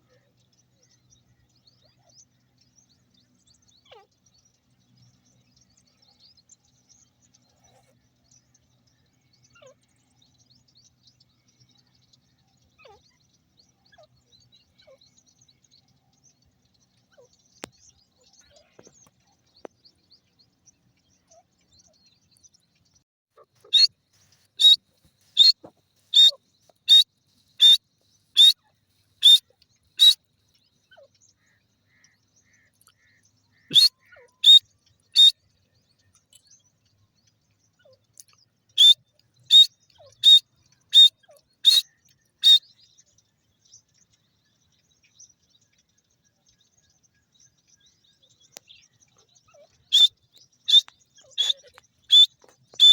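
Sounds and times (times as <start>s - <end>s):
bird calling short high notes: 25.4s - 25.6s, 27.6s - 27.8s, 28.4s - 28.6s, 33.7s - 34.6s, 38.8s - 40.4s, 51.4s - 52.9s.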